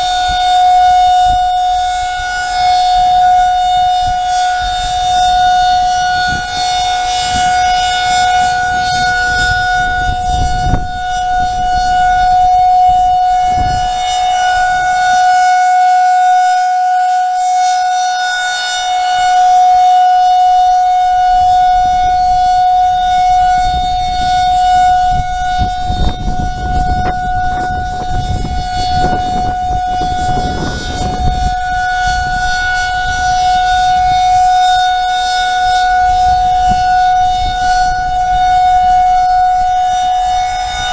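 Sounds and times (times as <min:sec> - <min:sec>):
warning siren steady tone: 0:00.0 - 0:40.9
low rumbling noise: 0:21.3 - 0:34.5.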